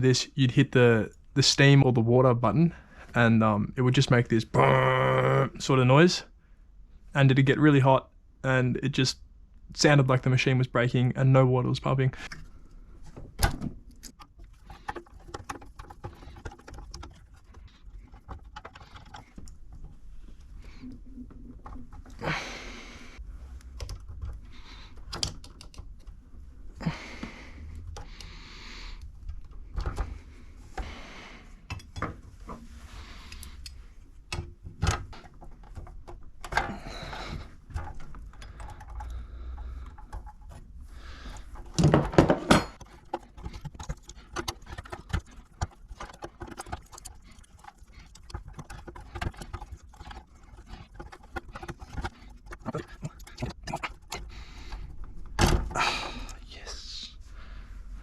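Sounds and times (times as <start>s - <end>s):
hands working machine parts: 12.2s - 56.4s.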